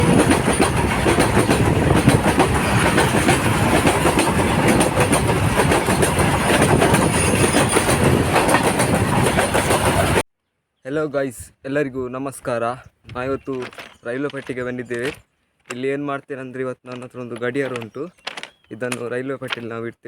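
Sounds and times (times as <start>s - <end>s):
train wheels clattering on rails: 0.0s - 10.2s, 17.6s - 19.6s.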